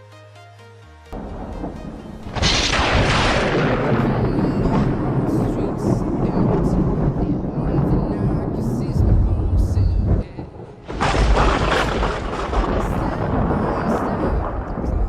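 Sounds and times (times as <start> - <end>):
electronic music: 0.0 - 5.2
stormy rumble: 1.2 - 15.0
thunder crack and rumble: 1.2 - 15.0.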